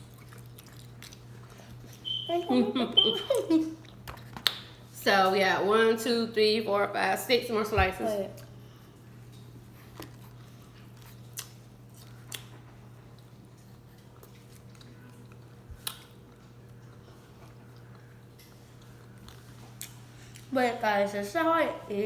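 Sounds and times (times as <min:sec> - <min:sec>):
chewing pizza: 0:00.0 - 0:04.8, 0:08.0 - 0:20.6
steady low hum: 0:00.0 - 0:22.0.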